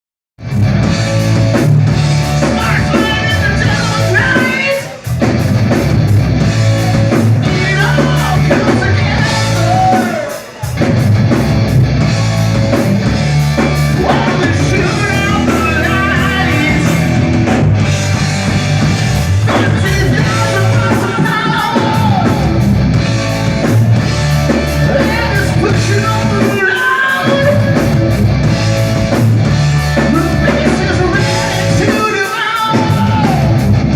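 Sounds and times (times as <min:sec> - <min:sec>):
drum kit: 0:00.4 - 0:33.9
electric guitar: 0:00.4 - 0:33.9
person singing: 0:02.5 - 0:05.0, 0:06.9 - 0:10.6, 0:13.9 - 0:17.2, 0:19.5 - 0:22.5, 0:24.8 - 0:27.8.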